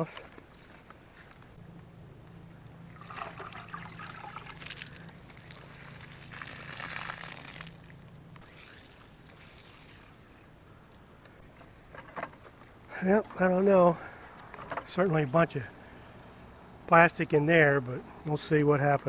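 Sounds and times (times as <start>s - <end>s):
steady low hum: 0.0s - 19.0s
water pouring into plastic jug: 3.0s - 8.0s.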